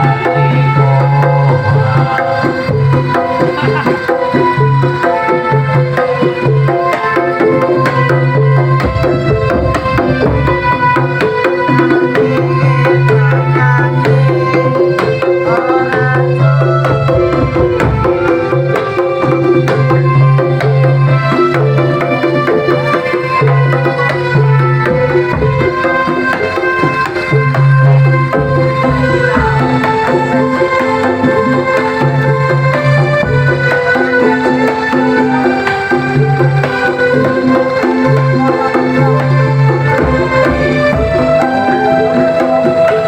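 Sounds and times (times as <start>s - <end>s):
heavy bass line: 0.0s - 6.2s
hand drums: 0.0s - 43.0s
music over sound system: 0.0s - 43.0s.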